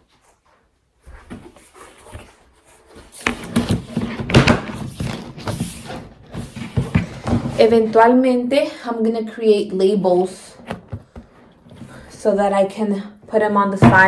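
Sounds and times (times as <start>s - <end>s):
boxes bumping and knocking: 3.1s - 8.0s, 10.5s - 12.1s, 13.7s - 14.0s.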